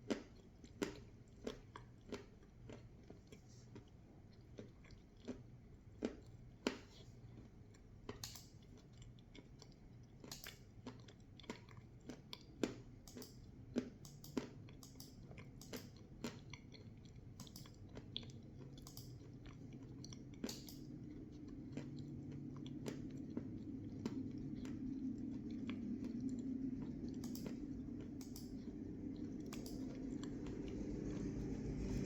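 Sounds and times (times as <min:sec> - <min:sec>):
chewing crunchy food: 0:00.0 - 0:32.0
low hum: 0:19.0 - 0:32.0.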